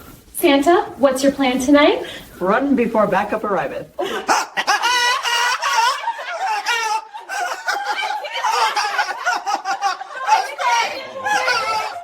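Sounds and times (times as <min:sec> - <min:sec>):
women laughing: 0:03.9 - 0:12.0.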